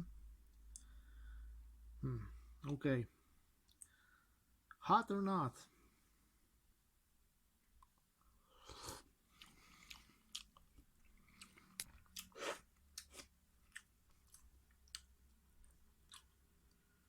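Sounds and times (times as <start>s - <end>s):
chewing with mouth clicks: 8.8s - 16.8s.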